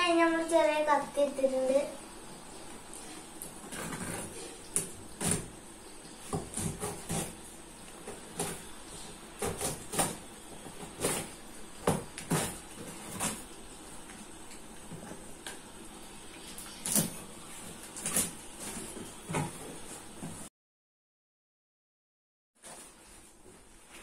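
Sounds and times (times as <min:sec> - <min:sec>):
cardboard scrapes and rustles: 0:03.0 - 0:04.6, 0:22.6 - 0:24.0
knife cutting cardboard box: 0:03.7 - 0:05.6, 0:06.2 - 0:13.5.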